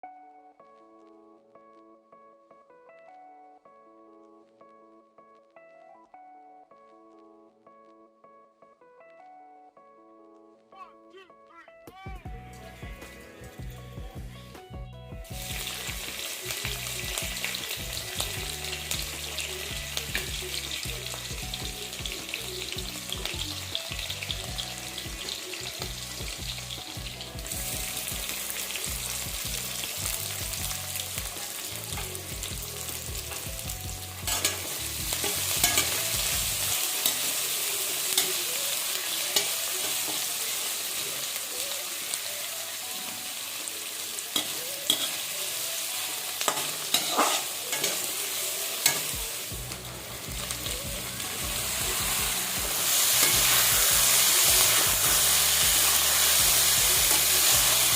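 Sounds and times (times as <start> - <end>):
food sizzling in hot oil: 15.2 - 57.9
metal spoon scraping a pan: 34.3 - 36.3, 44.4 - 45.2, 46.5 - 48.1.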